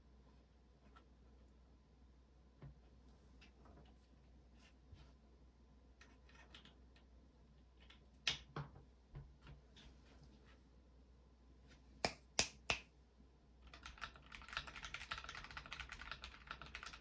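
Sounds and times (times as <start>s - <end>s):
mechanical keyboard keystrokes: 13.7s - 17.0s.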